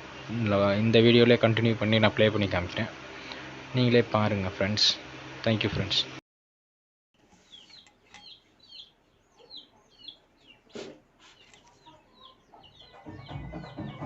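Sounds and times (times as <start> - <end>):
birds chirping: 7.2 - 14.0
music: 12.8 - 14.0.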